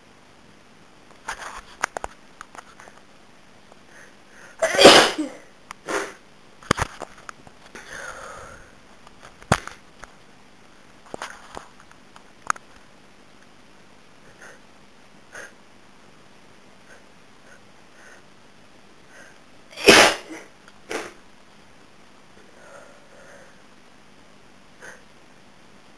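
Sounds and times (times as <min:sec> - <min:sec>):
woman sniffing: 0:04.0 - 0:06.2
short sharp sounds: 0:04.6 - 0:05.4, 0:19.8 - 0:21.1
woman sneezing: 0:04.6 - 0:06.2, 0:19.8 - 0:21.2.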